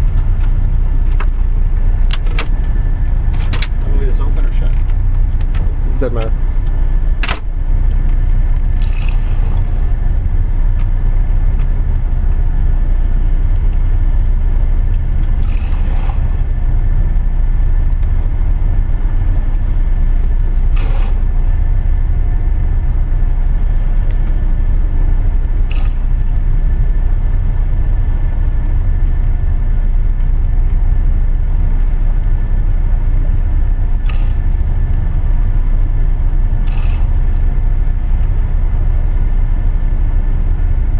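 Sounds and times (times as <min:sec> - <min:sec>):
deep ship engine rumble: 0:00.0 - 0:40.9
faint machinery hum: 0:00.0 - 0:40.9
brief swishes: 0:20.8 - 0:21.2.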